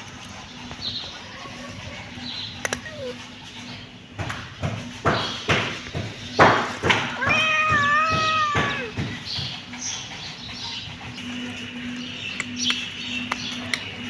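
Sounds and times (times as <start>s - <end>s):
noisy scuffling: 0.0s - 12.6s
kitten meowing: 7.0s - 9.0s.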